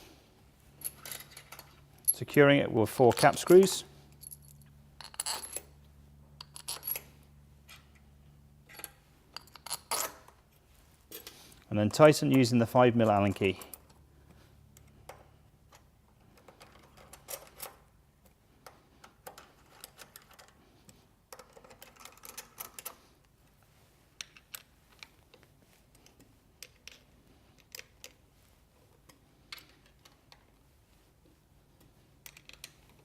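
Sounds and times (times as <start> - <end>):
allen key clicking in screws: 14.8 - 20.6, 21.3 - 23.0, 24.2 - 28.2, 32.2 - 33.0.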